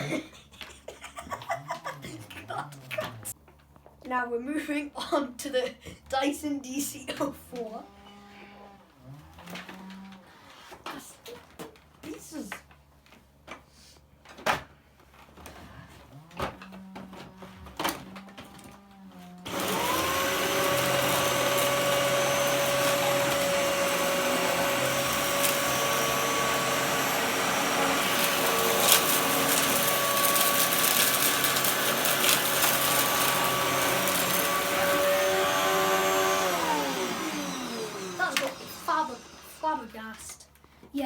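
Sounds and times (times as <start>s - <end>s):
vacuum cleaner motor whine: 16.0s - 39.9s.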